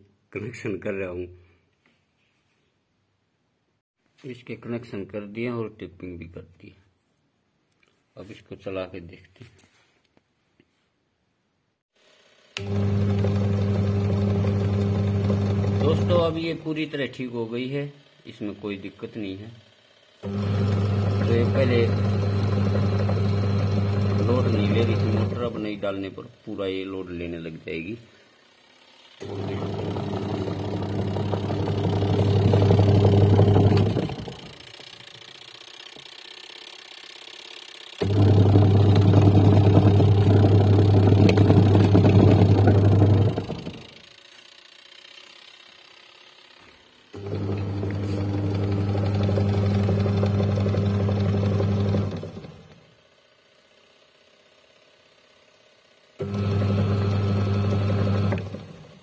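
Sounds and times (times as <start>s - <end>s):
washing machine motor hum: 12.5s - 59.0s
washing machine rattle: 29.4s - 34.5s.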